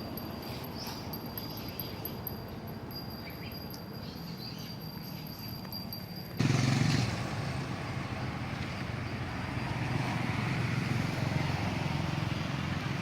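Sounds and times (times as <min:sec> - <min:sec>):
vehicle engine rumbling: 0:05.0 - 0:13.0.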